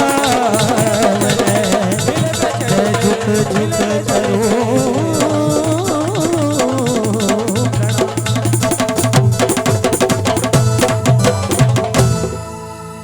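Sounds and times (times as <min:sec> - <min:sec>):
hand drum rhythm: 0:00.0 - 0:12.5
ornamented instrumental melody: 0:00.0 - 0:13.0.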